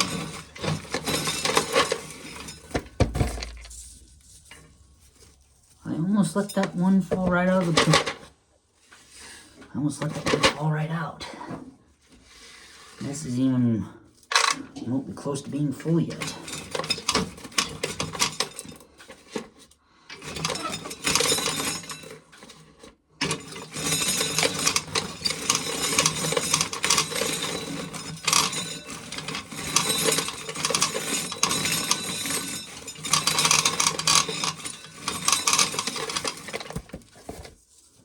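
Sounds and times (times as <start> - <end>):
corn sheller clattering: 0.0 - 4.1, 15.8 - 18.8, 20.2 - 22.4, 23.2 - 37.5
kernels rattling into pail: 0.0 - 4.5, 16.0 - 18.8, 20.2 - 22.6, 23.2 - 37.5.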